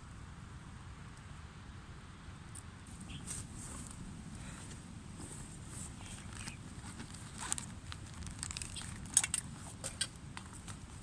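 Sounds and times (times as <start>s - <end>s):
small rustles: 2.9s - 11.0s.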